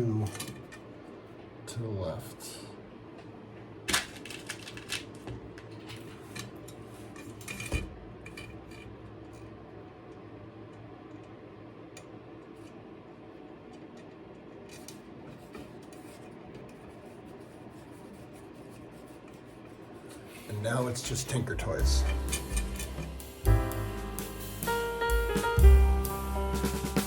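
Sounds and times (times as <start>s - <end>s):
faint steady hum: 0.0s - 26.6s
metal bicycle spokes clicking: 22.0s - 23.2s.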